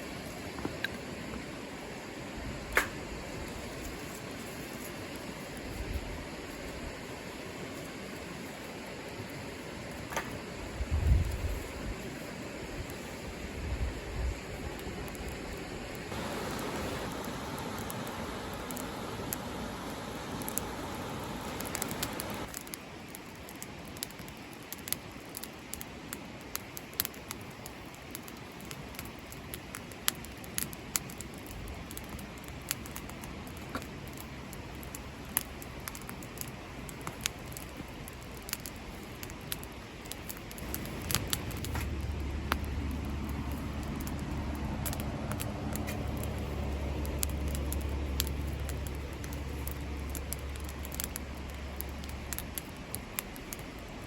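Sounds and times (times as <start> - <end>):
campfire crackling and popping: 0.0 - 54.0
low steady hum: 31.6 - 54.0.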